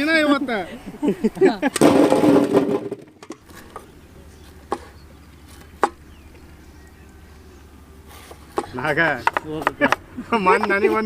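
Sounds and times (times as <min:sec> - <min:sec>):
steady low hum: 0:00.0 - 0:10.5
sharp knocks: 0:01.8 - 0:03.4, 0:05.8 - 0:06.0, 0:08.5 - 0:10.0.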